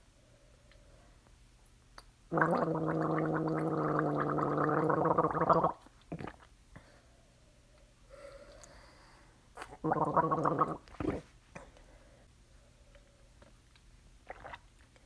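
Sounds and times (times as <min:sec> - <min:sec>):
person gargling water: 0:02.3 - 0:06.5, 0:09.6 - 0:11.3, 0:14.3 - 0:14.6.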